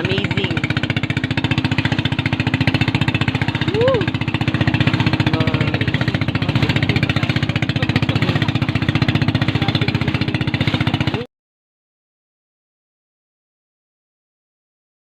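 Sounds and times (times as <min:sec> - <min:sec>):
motorboat engine pulsing: 0:00.0 - 0:11.3.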